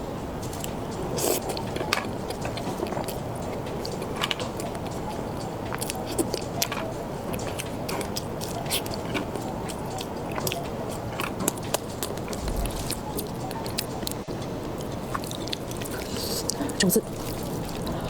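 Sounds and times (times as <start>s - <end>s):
mouth clicks and crunches: 0.4s - 18.0s
person biting and chewing food: 5.7s - 6.7s, 7.3s - 18.0s.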